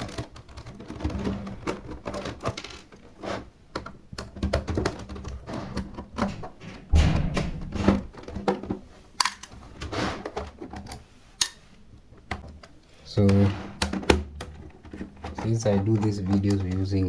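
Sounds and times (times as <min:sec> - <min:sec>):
plastic keyboard clicks and knocks: 0:03.7 - 0:11.6, 0:12.3 - 0:17.0
heavy thunk: 0:06.2 - 0:08.3.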